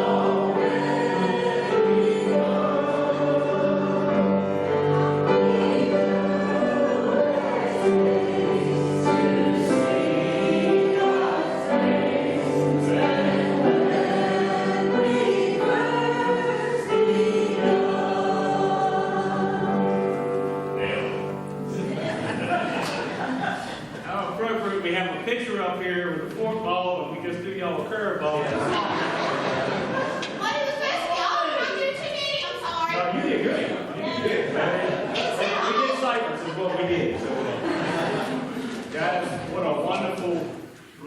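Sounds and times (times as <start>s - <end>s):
musical accompaniment: 0.0s - 23.2s
group singing gospel song: 0.0s - 24.0s, 28.4s - 31.9s, 32.9s - 40.7s.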